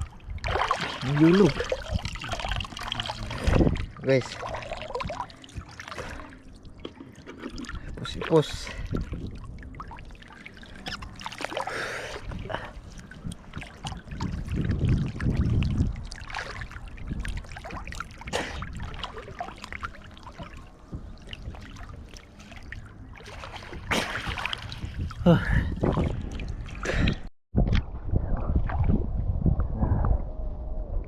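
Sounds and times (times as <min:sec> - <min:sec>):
seawater splashing and sloshing: 0:00.0 - 0:27.3.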